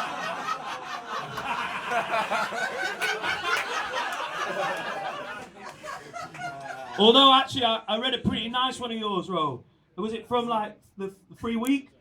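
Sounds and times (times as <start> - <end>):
audience laughing: 0.0 - 7.2.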